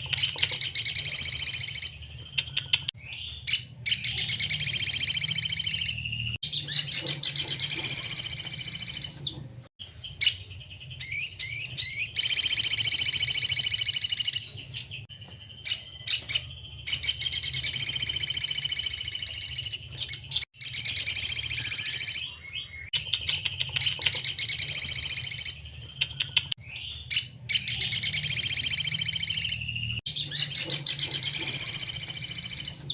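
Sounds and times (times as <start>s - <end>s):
sharp bird chips: 0.0s - 9.4s, 10.1s - 32.9s
bird singing trilled phrases: 0.0s - 32.9s.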